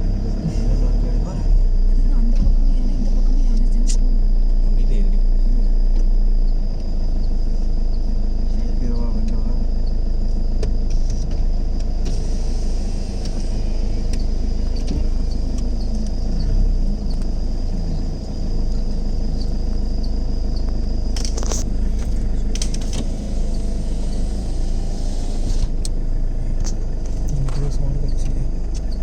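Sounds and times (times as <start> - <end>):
vehicle engine running: 0.0 - 29.0
sharp clicks: 19.4 - 23.2.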